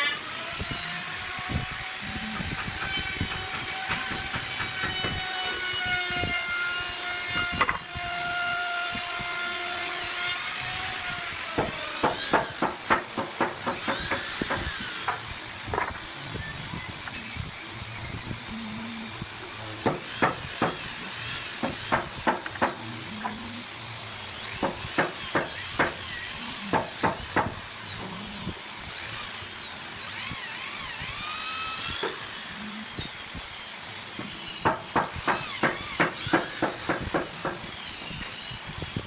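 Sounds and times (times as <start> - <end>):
power tool motor whining: 0.0 - 39.0
sharp knocks on wood: 11.6 - 16.0, 19.8 - 20.8, 24.6 - 26.0, 34.6 - 37.6.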